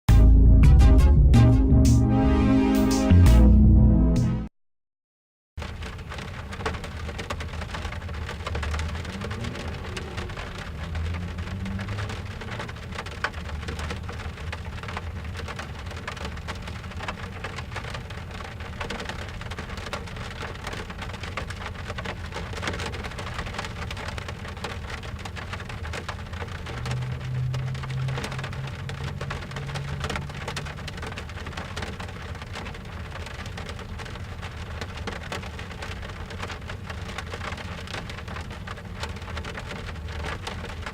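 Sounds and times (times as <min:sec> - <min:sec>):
rain on a car roof: 0:05.6 - 0:40.9
low rumble: 0:26.4 - 0:31.6.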